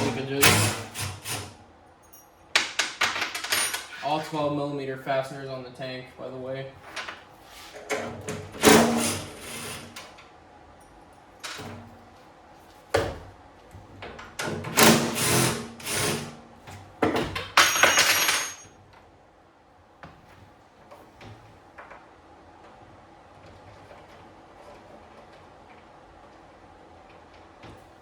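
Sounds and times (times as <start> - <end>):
tools and metal parts clattering: 2.0 - 4.2, 17.0 - 18.8.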